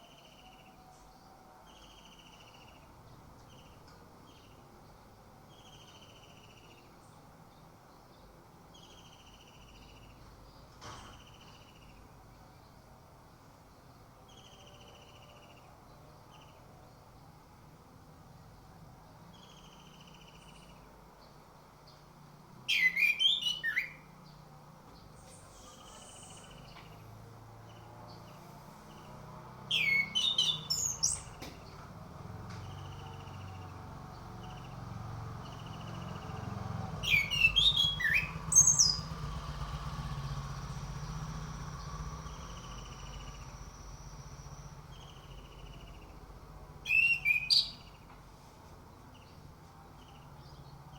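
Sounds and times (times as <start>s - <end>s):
thrush whistled song: 22.7s - 24.1s, 29.7s - 31.4s, 37.0s - 39.5s, 40.1s - 46.1s, 46.8s - 48.0s.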